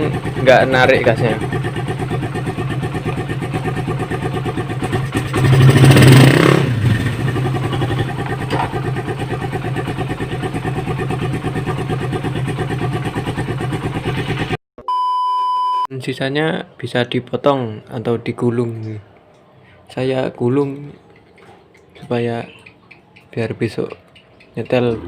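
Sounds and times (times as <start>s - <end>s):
motorcycle engine idling and revving: 0.0s - 14.6s.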